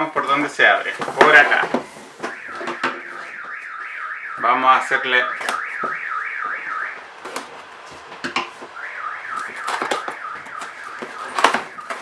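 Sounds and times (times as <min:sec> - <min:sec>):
electronic alarm warbling: 0:02.2 - 0:07.0, 0:08.8 - 0:12.0.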